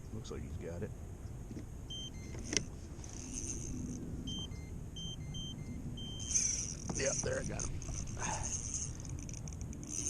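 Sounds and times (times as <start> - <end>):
short electronic beeps: 1.9 - 2.5, 4.2 - 7.2.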